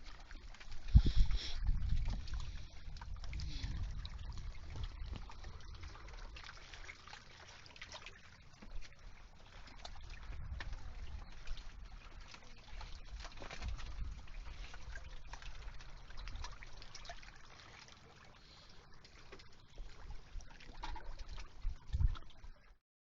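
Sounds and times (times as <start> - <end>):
small splashy ticks: 0.0 - 1.0, 1.8 - 22.5
water lapping and trickling: 0.0 - 22.8.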